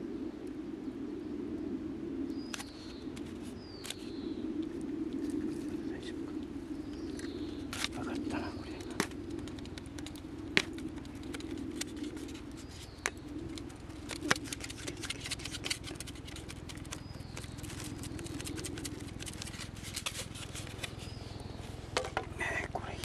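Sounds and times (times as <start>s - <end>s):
wood fire crackling: 6.3s - 22.1s.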